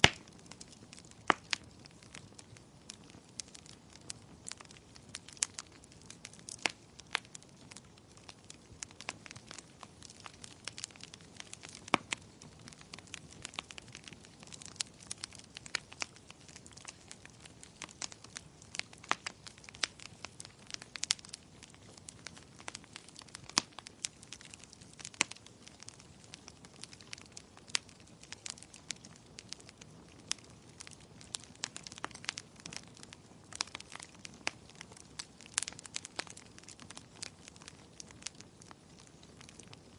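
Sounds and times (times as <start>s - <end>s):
wood fire crackling and popping: 0.0s - 39.9s.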